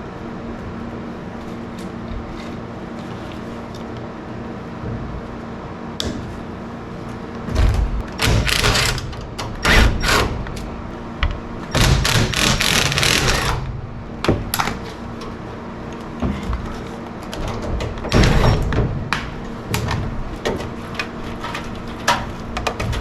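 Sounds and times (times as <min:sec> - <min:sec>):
low hum: 0:00.0 - 0:16.8.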